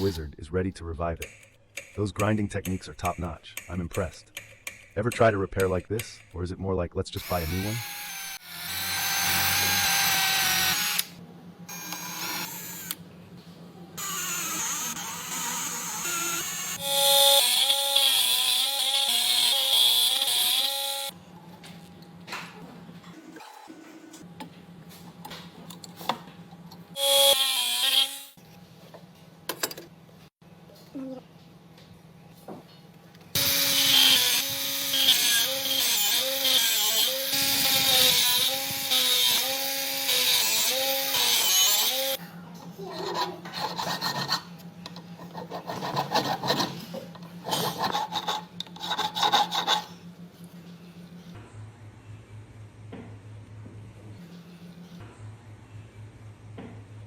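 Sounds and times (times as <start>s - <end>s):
power tool whine and hiss: 33.4s - 42.2s
file scraping metal gear: 42.8s - 50.1s.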